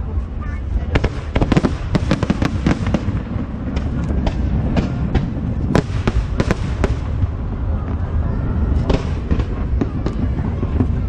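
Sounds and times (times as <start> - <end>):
fireworks cracking and banging: 0.0 - 11.0.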